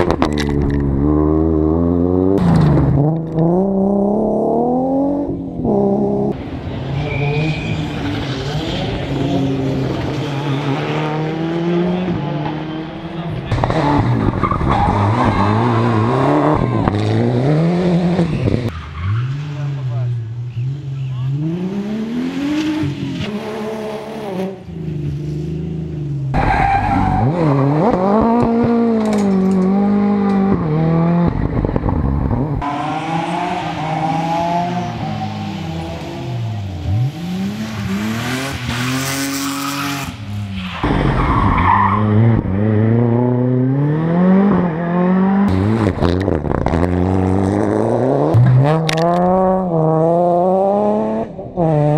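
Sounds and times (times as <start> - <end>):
rally car engines revving: 0.0 - 51.9
tyre squeal: 7.0 - 8.4.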